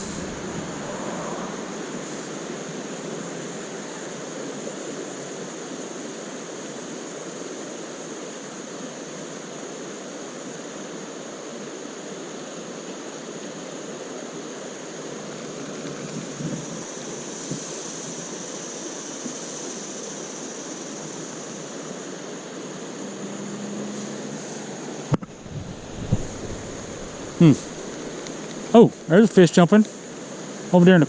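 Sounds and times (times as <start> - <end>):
creek water flowing: 0.0 - 3.8, 24.1 - 29.2.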